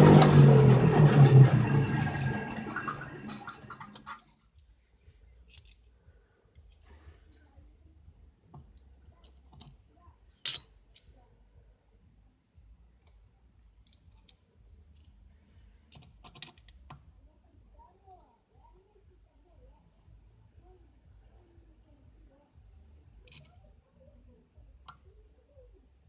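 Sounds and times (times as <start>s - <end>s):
lathe humming: 0.0s - 4.2s.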